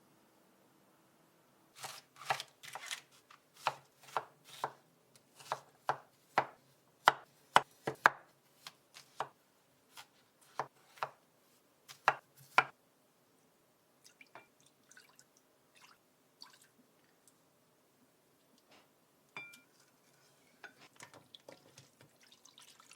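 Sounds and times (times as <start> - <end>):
knife chopping on cutting board: 1.8 - 3.0, 3.6 - 4.8, 5.4 - 11.2, 11.9 - 12.7.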